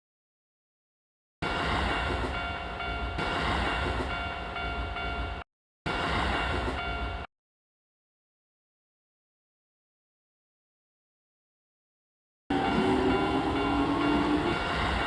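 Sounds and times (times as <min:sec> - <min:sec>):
train rumbling past: 0:01.4 - 0:07.3, 0:12.5 - 0:15.0
level crossing warning bell ringing: 0:02.0 - 0:05.4, 0:06.4 - 0:07.3, 0:12.5 - 0:15.0.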